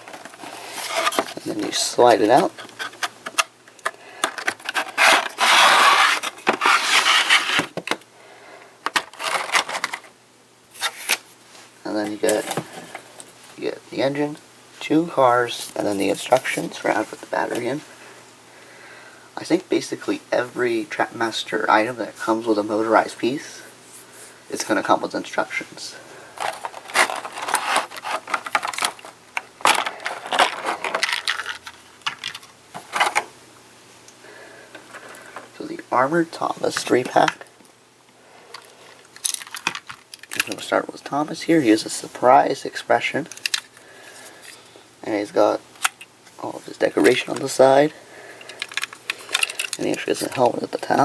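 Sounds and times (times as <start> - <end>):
cardboard and plastic scraping: 0.0 - 8.0, 8.9 - 10.1, 26.4 - 33.3
packaging crinkling and rustling: 0.0 - 8.0, 8.9 - 10.1, 26.4 - 33.3, 38.5 - 40.7, 48.4 - 51.0.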